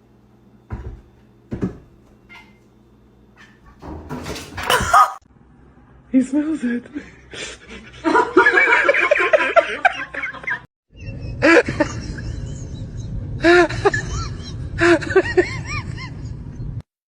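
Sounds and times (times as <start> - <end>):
people laughing: 4.7 - 5.2, 8.0 - 10.6.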